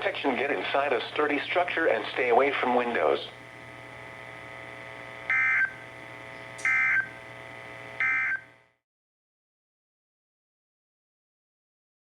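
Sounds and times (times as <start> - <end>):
faint receiver hum and hiss: 0.0 - 8.8.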